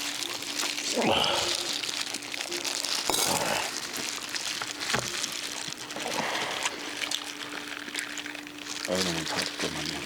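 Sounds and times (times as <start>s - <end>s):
crunching and rustling of eating: 0.0s - 10.0s.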